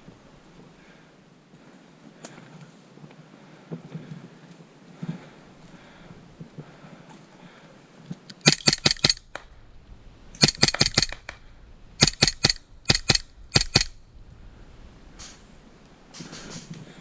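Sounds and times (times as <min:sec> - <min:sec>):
airsoft gun firing bursts: 0:08.4 - 0:09.5, 0:10.4 - 0:11.4, 0:12.0 - 0:14.0.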